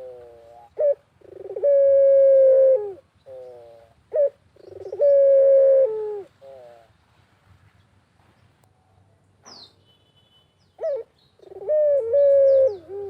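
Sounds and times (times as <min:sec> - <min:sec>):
dove cooing: 0:00.0 - 0:06.9, 0:10.8 - 0:13.0.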